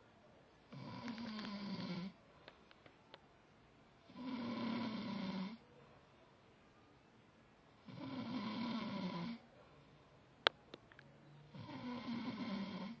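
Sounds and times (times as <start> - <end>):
man snoring: 0.7 - 2.2, 4.1 - 5.6, 7.8 - 9.4, 11.5 - 13.0.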